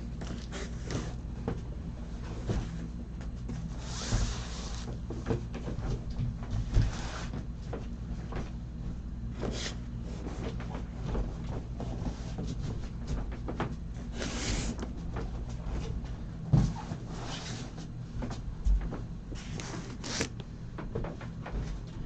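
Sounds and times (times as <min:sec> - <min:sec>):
cardboard sliding scrapes: 0:03.7 - 0:04.9, 0:14.1 - 0:14.8.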